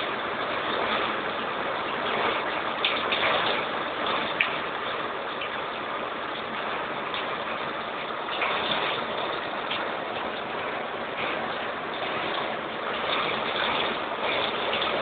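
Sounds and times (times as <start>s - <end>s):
raindrop taps: 0.0s - 15.0s
steady rain hiss: 0.0s - 15.0s.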